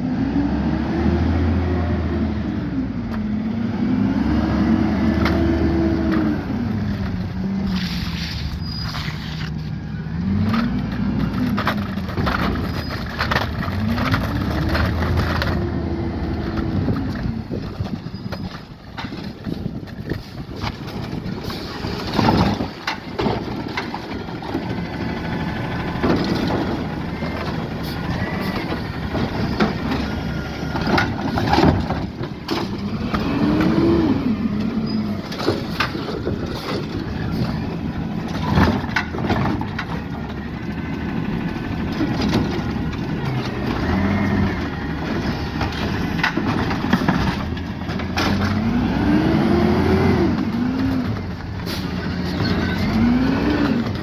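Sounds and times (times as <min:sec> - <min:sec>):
truck engine revving: 0:00.0 - 0:18.5, 0:19.4 - 0:54.0
knocks and clatters: 0:10.3 - 0:48.8.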